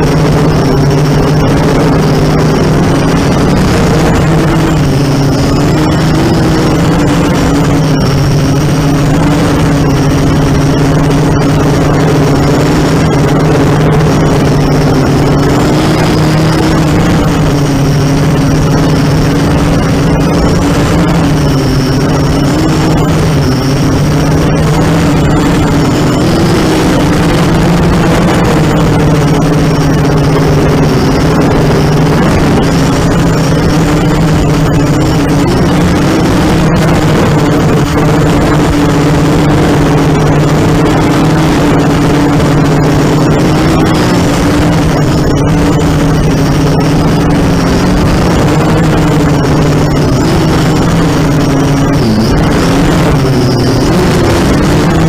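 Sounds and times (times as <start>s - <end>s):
quadcopter motors buzzing: 0.0s - 55.0s.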